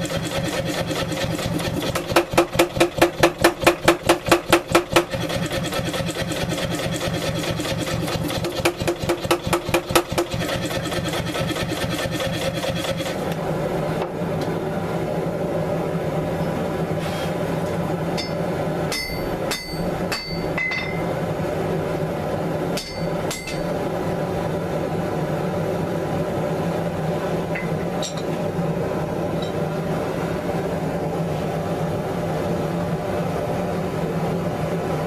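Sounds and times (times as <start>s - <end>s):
power hammer blows on metal: 18.2s - 21.1s, 22.8s - 23.9s.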